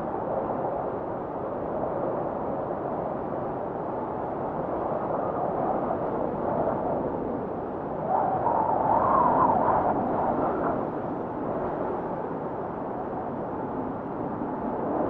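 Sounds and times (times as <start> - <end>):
wind gusting: 6.8 - 15.0.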